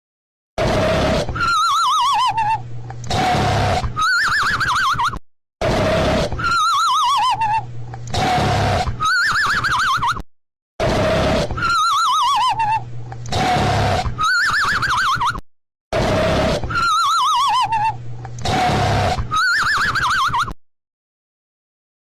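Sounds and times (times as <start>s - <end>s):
cartoon rasping snore: 0.6s - 2.2s, 3.0s - 4.2s, 5.6s - 7.3s, 8.1s - 9.3s, 10.8s - 12.6s, 13.3s - 14.6s, 16.0s - 17.6s, 18.4s - 19.6s
warbling whistle: 16.7s - 18.0s.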